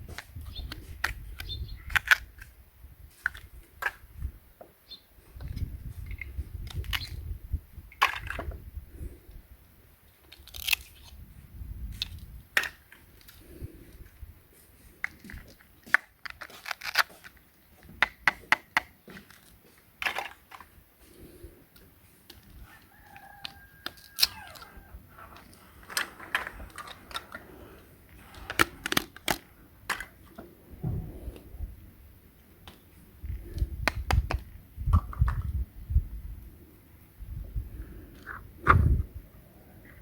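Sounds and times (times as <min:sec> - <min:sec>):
plastic pieces clicking: 0:10.2 - 0:11.2, 0:15.0 - 0:17.4, 0:28.2 - 0:30.2
dull low thumps: 0:38.6 - 0:39.3.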